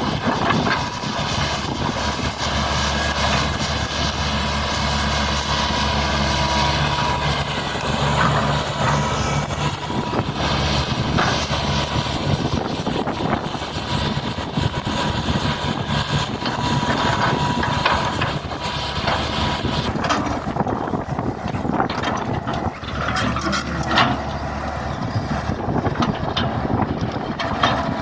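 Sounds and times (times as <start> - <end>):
excavator diesel engine running: 0.0 - 28.0
machine knocks and clanks: 25.1 - 28.0.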